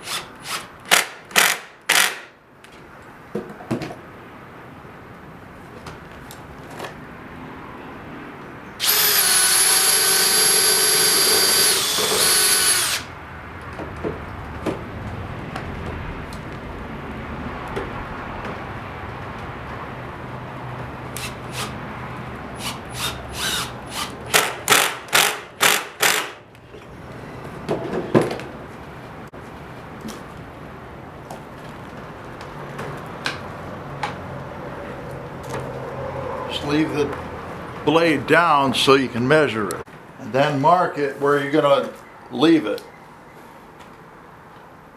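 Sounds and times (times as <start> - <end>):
short drill trigger bursts: 0.0 - 2.3, 8.8 - 13.1, 22.6 - 26.4
power drill whining: 8.8 - 13.1, 22.6 - 26.3.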